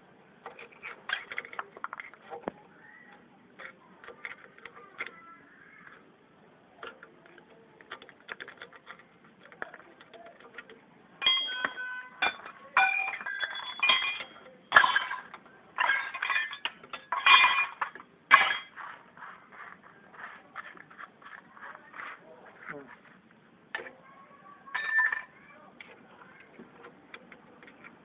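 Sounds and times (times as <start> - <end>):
metal parts clinking and rattling: 0.4 - 2.5, 7.8 - 19.7, 24.7 - 25.4.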